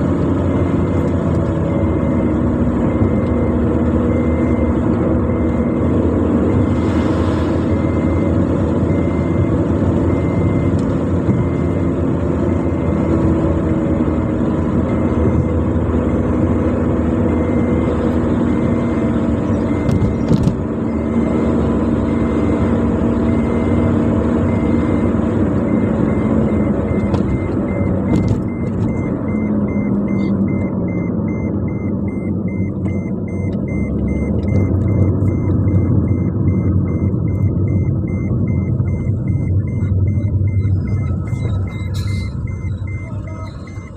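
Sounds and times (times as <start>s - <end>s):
car engine and road rumble: 0.0s - 43.9s
faint high beeping: 34.9s - 43.9s.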